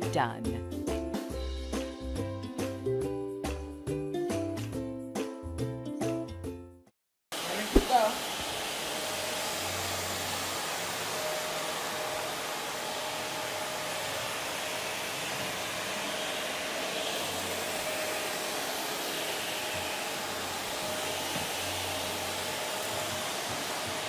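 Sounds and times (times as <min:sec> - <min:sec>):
vacuum cleaner running: 0:07.4 - 0:24.0.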